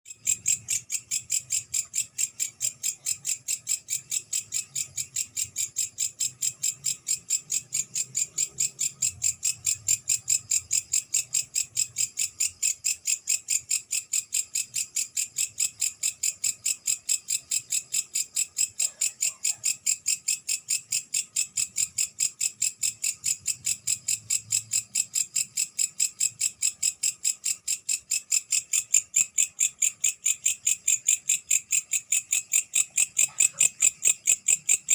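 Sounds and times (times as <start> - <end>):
katydid chirping: 27.4 - 34.9.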